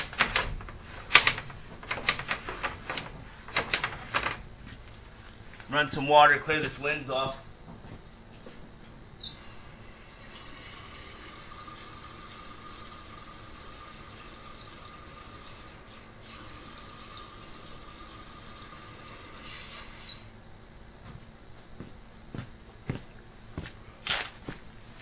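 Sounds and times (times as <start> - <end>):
water running into a drain: 10.1 - 15.7.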